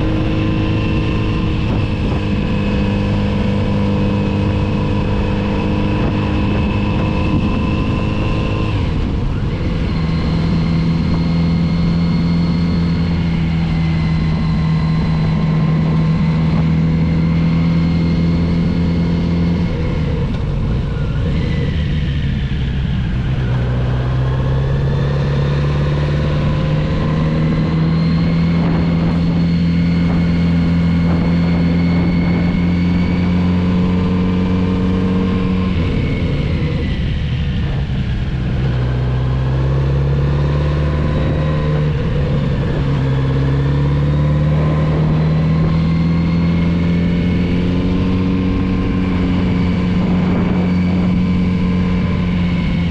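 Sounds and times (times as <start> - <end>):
motorcycle engine accelerating: 0.0 - 52.9.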